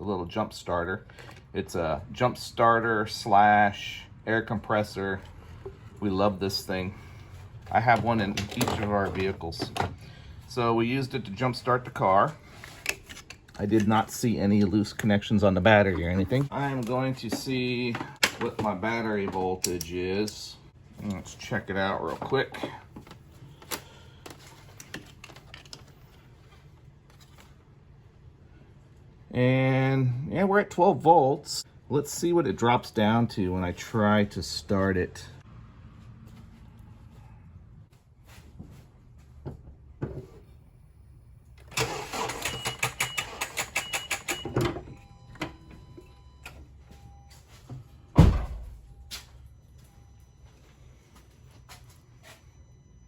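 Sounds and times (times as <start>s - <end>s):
car starter labouring: 41.6s - 43.7s
loud thump: 48.2s - 48.8s.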